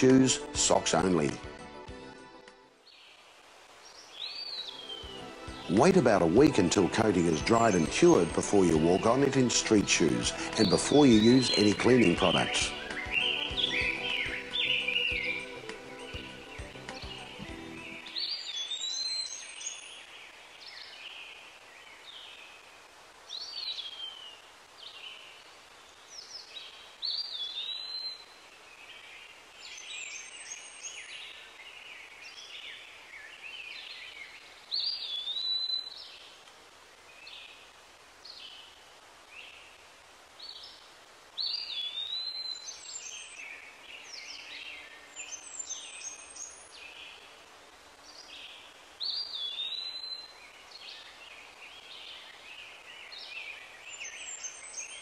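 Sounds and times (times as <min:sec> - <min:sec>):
birds chirping and singing: 0:03.9 - 0:21.2, 0:26.2 - 0:28.2, 0:29.7 - 0:36.3, 0:41.4 - 0:47.3, 0:48.1 - 0:55.0.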